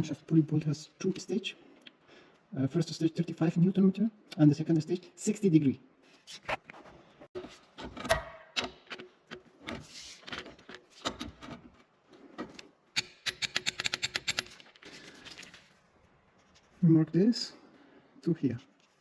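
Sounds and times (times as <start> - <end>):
ratchet wrench clicking: 13.0 - 14.5.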